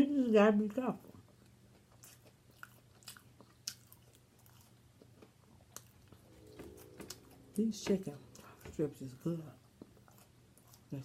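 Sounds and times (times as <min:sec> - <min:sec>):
chewing and biting food: 0:01.0 - 0:06.2, 0:09.8 - 0:11.0.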